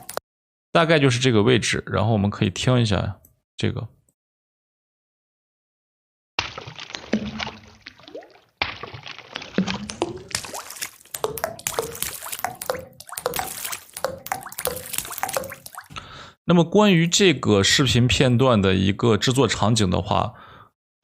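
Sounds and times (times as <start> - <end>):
raindrops dripping and splashing: 0.0 - 0.2, 6.4 - 16.0.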